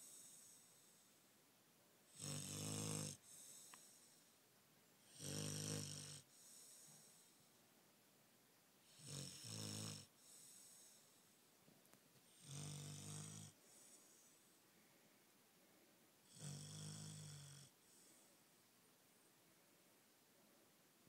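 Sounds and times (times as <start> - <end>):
dog snoring: 2.1 - 4.2, 5.0 - 7.3, 8.8 - 11.1, 12.3 - 14.4, 16.2 - 18.2
soft breath: 3.2 - 4.5, 6.2 - 7.7, 10.1 - 11.6, 13.5 - 16.3, 17.7 - 20.8.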